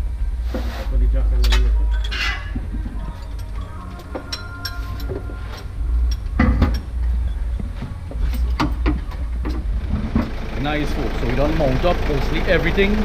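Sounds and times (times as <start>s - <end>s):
low rumble: 0.0s - 3.9s, 5.0s - 13.0s
metal tools clinking: 1.4s - 9.7s.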